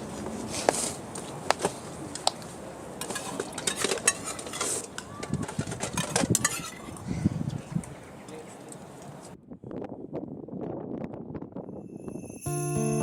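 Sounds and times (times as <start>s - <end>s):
cutlery and dishes clinking: 3.0s - 6.8s.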